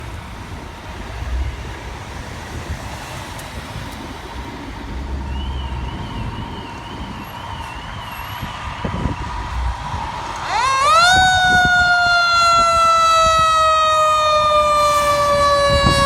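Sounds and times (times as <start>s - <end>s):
engine and road rumble: 0.0s - 16.0s
electronic siren yelping: 10.4s - 16.0s.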